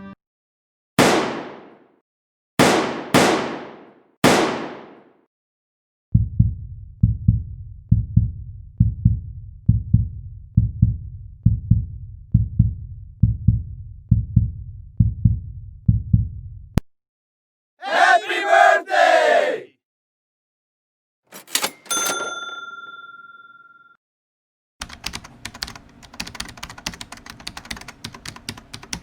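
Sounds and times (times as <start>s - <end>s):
heartbeat thumps: 6.1s - 16.8s.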